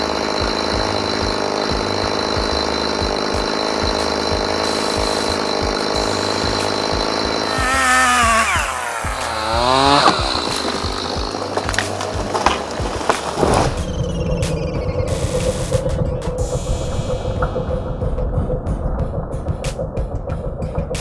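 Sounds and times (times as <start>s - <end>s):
chainsaw revving: 0.0s - 13.4s.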